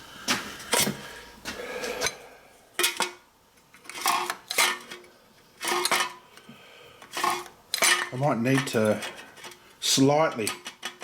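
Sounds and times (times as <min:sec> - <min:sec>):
metallic clanks of can crusher: 0:03.8 - 0:06.2, 0:07.1 - 0:09.6, 0:10.3 - 0:11.0.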